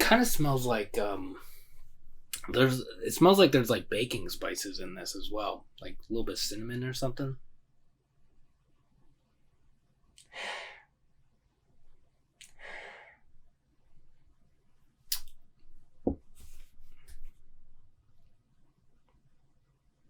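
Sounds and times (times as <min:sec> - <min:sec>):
person sniffing: 0:10.2 - 0:10.9, 0:12.4 - 0:13.2
dull knock: 0:16.0 - 0:16.3.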